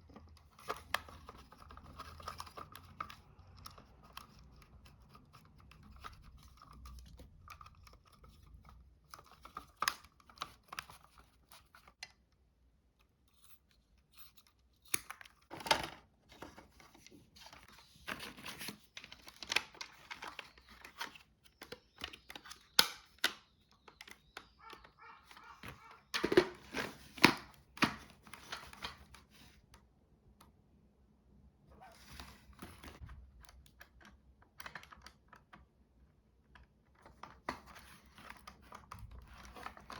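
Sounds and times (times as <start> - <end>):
plastic clicks scrapes and rustles: 0.0 - 12.4, 36.5 - 39.9.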